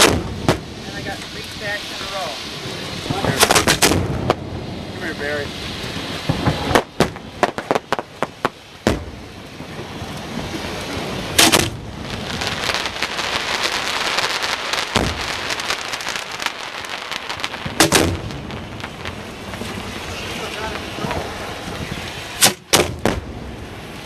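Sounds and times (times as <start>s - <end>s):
fireworks banging and crackling: 0.0s - 24.0s.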